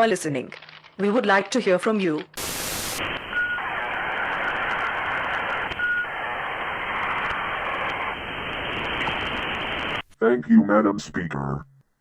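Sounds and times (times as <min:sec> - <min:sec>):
radio static hiss: 0:02.4 - 0:10.2.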